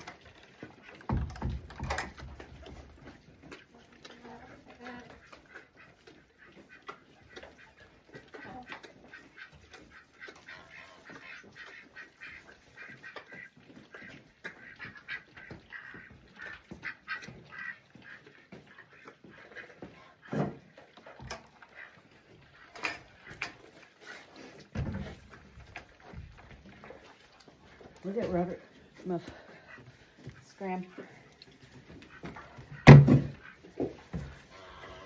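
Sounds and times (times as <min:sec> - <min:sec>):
loud knocks: 0:32.8 - 0:33.4.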